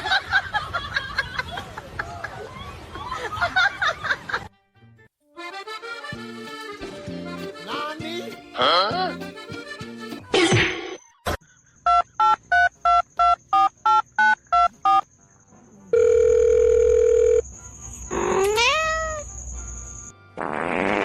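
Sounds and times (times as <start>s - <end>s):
steady phone tone: 16.0s - 17.4s.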